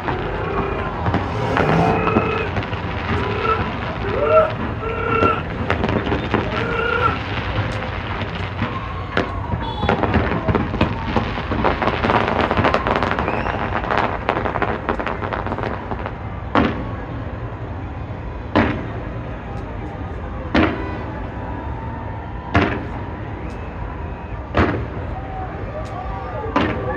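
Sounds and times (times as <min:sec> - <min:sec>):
steady low rumble: 0:00.0 - 0:04.8
loud firework booms: 0:00.0 - 0:17.0
fireworks bangs and crackling: 0:00.0 - 0:26.9.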